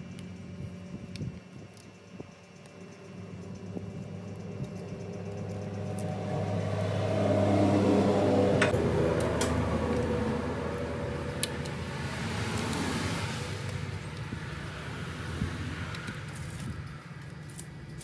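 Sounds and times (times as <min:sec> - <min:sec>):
motor hum: 0:00.0 - 0:18.0.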